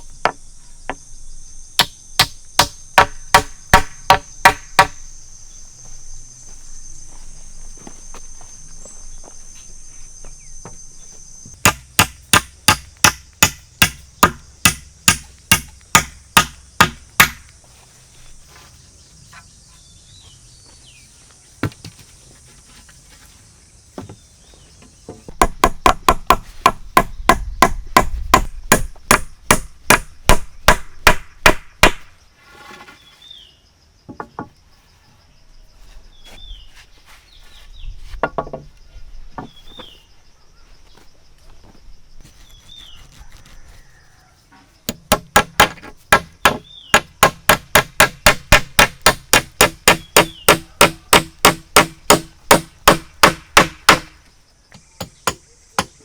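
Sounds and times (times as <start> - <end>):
insect buzz: 0.0 - 56.0
bird chirps: 46.4 - 47.1.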